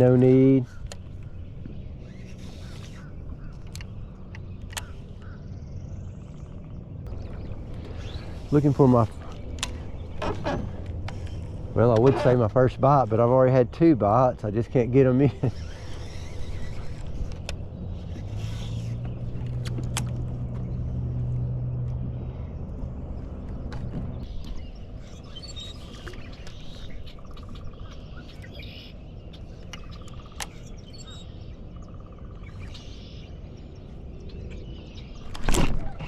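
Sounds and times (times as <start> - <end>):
low motor hum: 0.0 - 36.0
small birds chirping: 0.0 - 36.0
sharp clicks: 3.5 - 5.0, 29.6 - 30.7.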